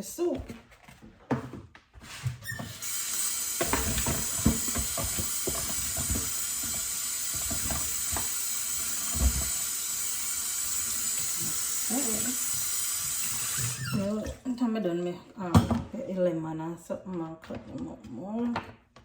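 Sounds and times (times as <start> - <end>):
tap running into sink: 2.6 - 14.0
thumps and knocks in sink: 3.6 - 8.4, 9.0 - 9.6.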